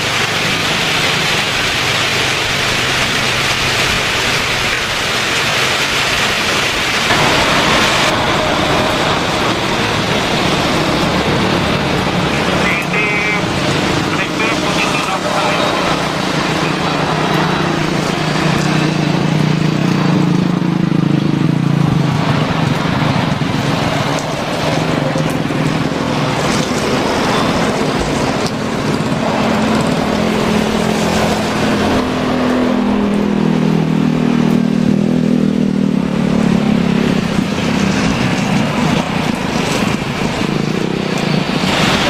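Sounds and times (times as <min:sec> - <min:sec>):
heavy rain hissing: 0:00.0 - 0:34.7, 0:35.4 - 0:42.0
jet engines landing: 0:00.0 - 0:42.0.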